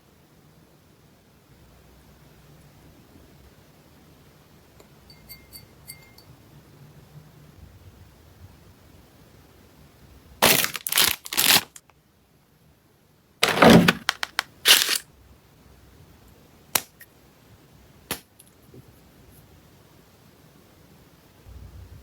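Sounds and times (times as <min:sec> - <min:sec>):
sharp packaging rustling: 0:10.4 - 0:11.8, 0:13.4 - 0:15.0.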